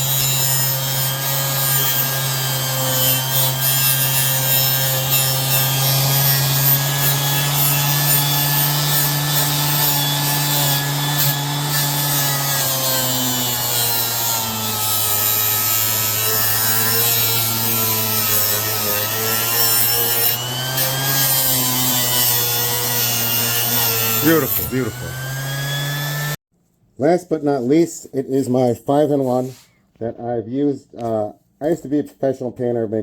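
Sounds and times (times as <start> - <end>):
orbital sander motor hum: 20.4 - 26.4.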